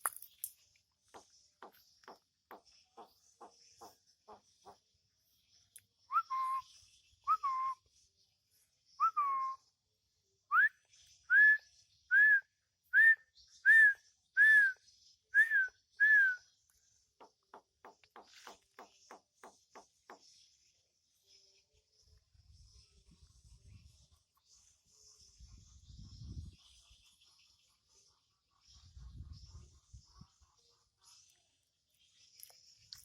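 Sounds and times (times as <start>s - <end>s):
bird whistling: 6.1s - 6.7s, 7.3s - 7.8s, 9.0s - 9.6s, 10.5s - 10.7s, 11.3s - 14.8s, 15.4s - 16.4s.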